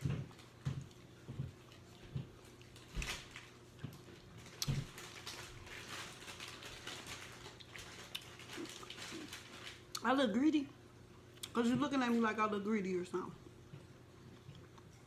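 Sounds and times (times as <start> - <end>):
person chewing crunchy chips: 4.0 - 10.0.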